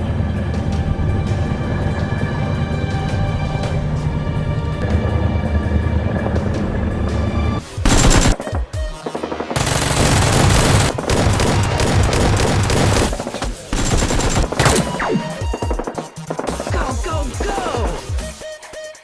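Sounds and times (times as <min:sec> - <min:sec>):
background music: 0:00.0 - 0:19.0
automatic gunfire bursts: 0:07.9 - 0:17.9.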